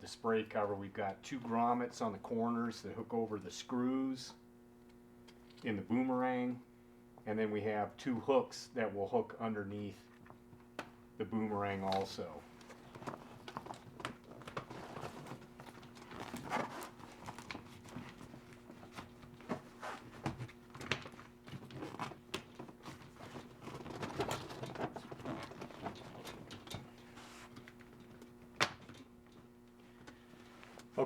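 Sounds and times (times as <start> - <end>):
faint steady hum: 0.0 - 31.0
fabric rustling: 12.7 - 20.2.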